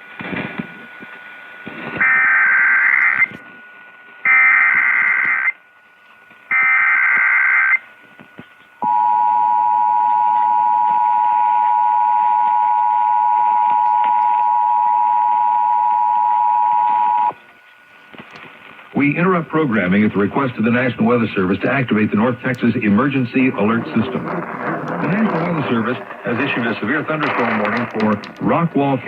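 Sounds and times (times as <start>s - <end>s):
data bursts on radio: 4.3s - 5.6s, 6.5s - 7.8s.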